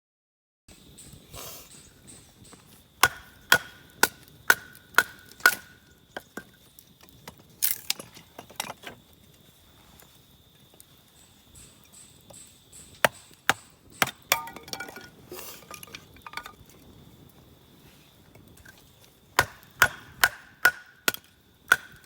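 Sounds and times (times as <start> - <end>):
blade striking firewood: 2.5 - 8.9, 12.3 - 16.6, 18.6 - 22.0.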